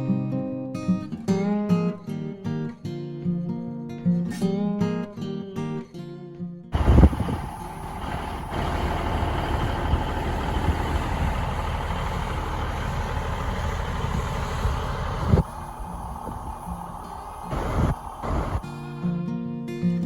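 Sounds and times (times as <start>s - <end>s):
heavy vehicle engine rumbling: 6.8s - 18.7s.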